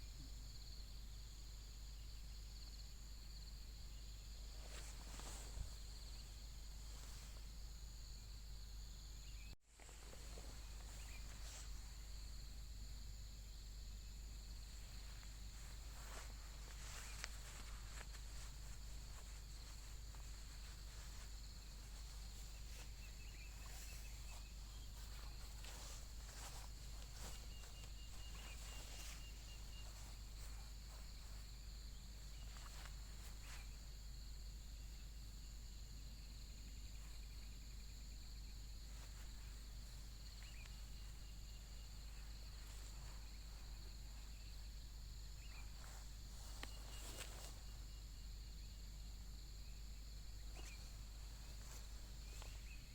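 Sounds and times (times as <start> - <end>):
insects chirring: 0.0 - 52.9
soft clicks and rustles: 4.5 - 7.8, 9.8 - 12.4, 14.4 - 33.9, 45.4 - 47.9, 50.4 - 52.9.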